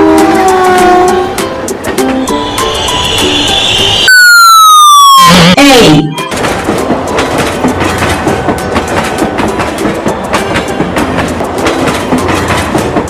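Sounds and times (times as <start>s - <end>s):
train wheels clattering on rails: 0.0s - 3.4s, 6.2s - 13.0s.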